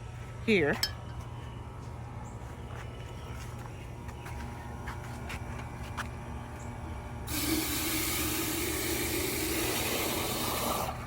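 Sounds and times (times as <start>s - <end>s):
water running into a vase: 7.3s - 11.0s.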